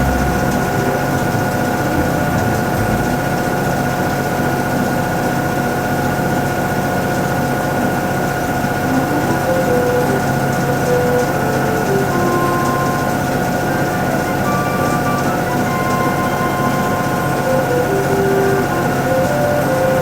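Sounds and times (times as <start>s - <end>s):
constant whine: 0.0s - 4.2s, 8.8s - 20.0s
washing machine motor hum: 0.0s - 20.0s.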